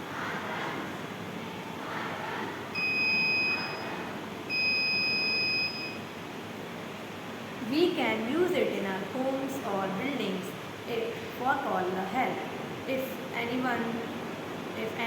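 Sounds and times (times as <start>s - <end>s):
high-pitched alarm beeps: 2.8s - 3.9s, 4.5s - 6.0s.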